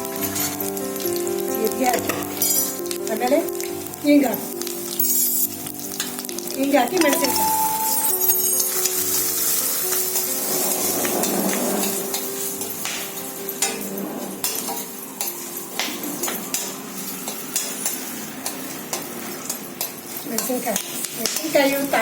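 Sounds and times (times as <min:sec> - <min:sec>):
sharp pops from frying oil: 0:00.0 - 0:07.4, 0:11.0 - 0:22.0
chillies sizzling in hot oil: 0:00.0 - 0:22.0
spoon scraping a pan: 0:07.0 - 0:15.5.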